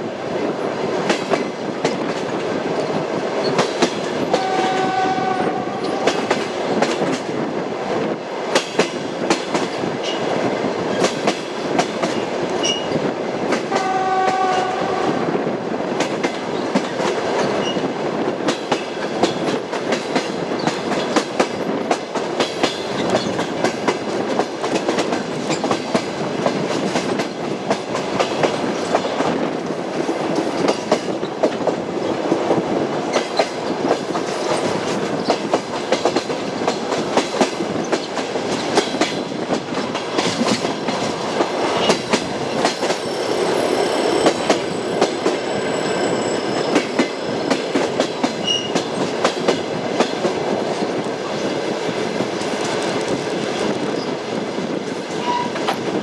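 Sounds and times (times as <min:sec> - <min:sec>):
train wheels clattering over rails: 0:00.0 - 0:15.3, 0:15.9 - 0:56.0
train horn: 0:04.3 - 0:06.3, 0:13.7 - 0:15.3.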